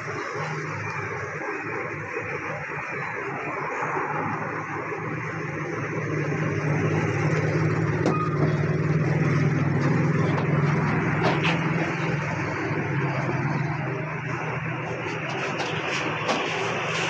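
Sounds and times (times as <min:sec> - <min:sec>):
compressor humming: 0:06.4 - 0:17.0.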